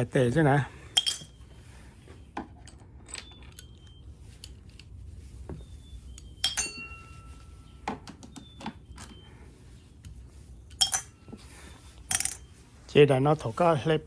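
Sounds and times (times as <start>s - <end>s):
metal tools clinking: 0.9s - 4.9s, 6.1s - 7.8s, 10.1s - 12.9s.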